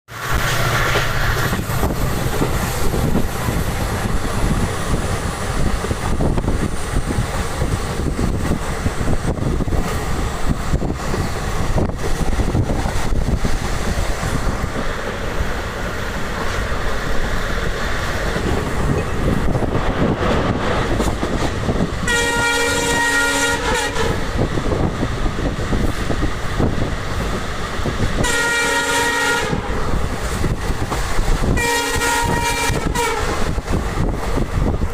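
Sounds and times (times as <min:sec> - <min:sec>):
train wheels rumbling on rails: 0:00.1 - 0:34.9
locomotive horn blast: 0:22.0 - 0:24.3, 0:28.2 - 0:29.9, 0:31.5 - 0:33.5.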